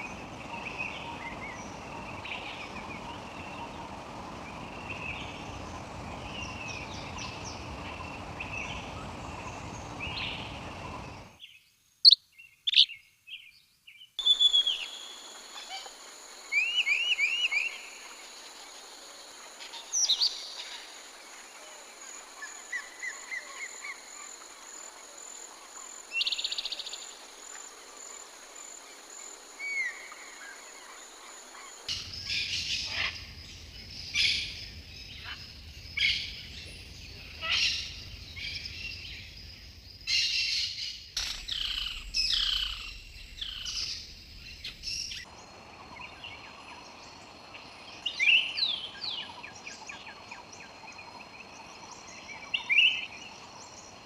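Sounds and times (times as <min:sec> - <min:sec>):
low background rumble: 0:00.0 - 0:11.4, 0:41.4 - 0:48.0
songbirds chirping and trilling: 0:00.0 - 0:54.0.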